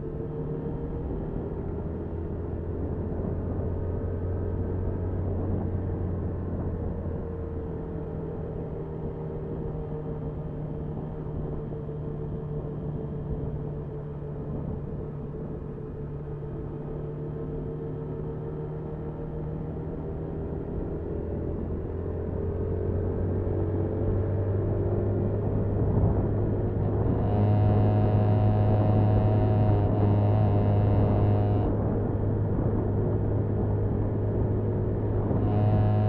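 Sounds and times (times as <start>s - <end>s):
road and wind noise: 0.0s - 36.0s
motorcycle engine running: 24.6s - 36.0s.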